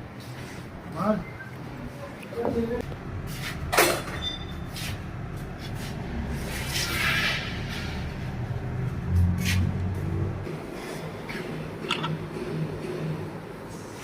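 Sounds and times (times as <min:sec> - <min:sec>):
engine and gearbox drone: 0:11.3 - 0:13.7.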